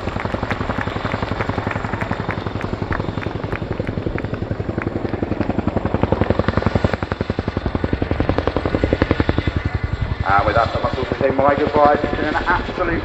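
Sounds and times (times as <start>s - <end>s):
helicopter rotor blades thudding: 0.0s - 10.2s.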